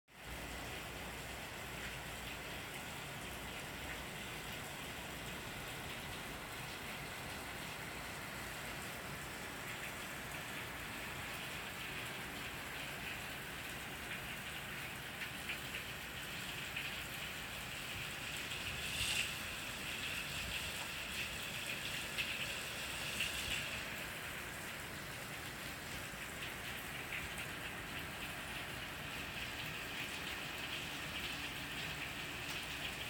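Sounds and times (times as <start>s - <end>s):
rain on deck and leaves: 0.1s - 33.0s
raindrops ticking: 9.6s - 33.0s.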